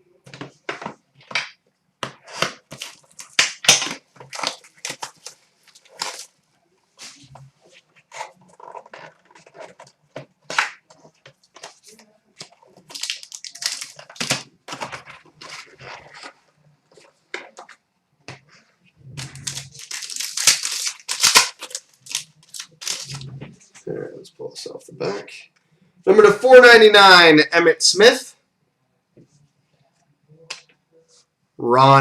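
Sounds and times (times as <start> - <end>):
plastic wrapping ripping: 2.3 - 6.3, 11.6 - 16.3, 19.1 - 23.3
plastic wrapping crinkling: 2.3 - 6.4, 7.0 - 17.8, 19.0 - 23.6.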